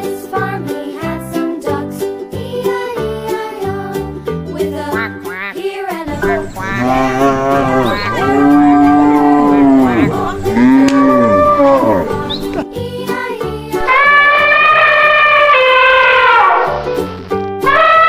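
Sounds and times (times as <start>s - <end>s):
cow mooing: 6.1s - 12.7s.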